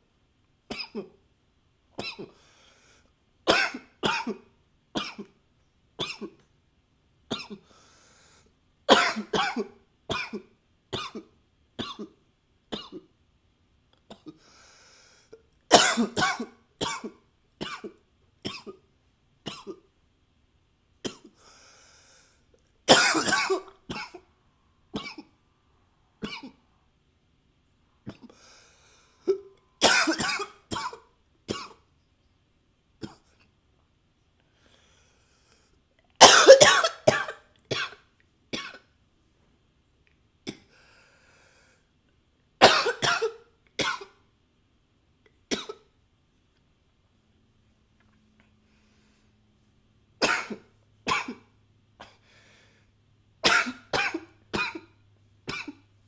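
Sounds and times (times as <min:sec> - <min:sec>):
man coughing: 0:08.9 - 0:10.4, 0:15.7 - 0:17.9, 0:22.9 - 0:24.2, 0:29.3 - 0:31.8, 0:36.2 - 0:38.0, 0:42.6 - 0:44.1.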